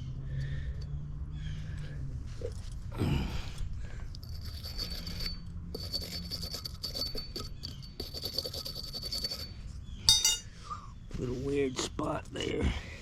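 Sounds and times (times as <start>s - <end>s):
metallic clink: 4.2s - 10.6s.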